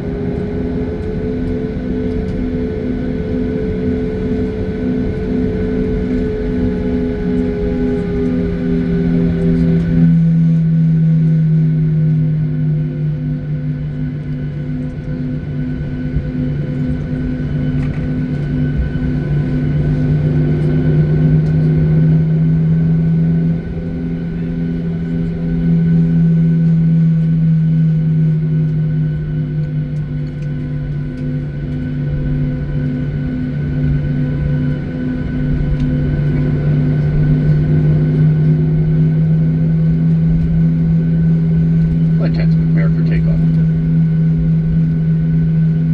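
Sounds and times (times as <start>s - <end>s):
jet engines droning in cabin: 0.0s - 45.9s
throbbing engine beat: 33.4s - 45.9s.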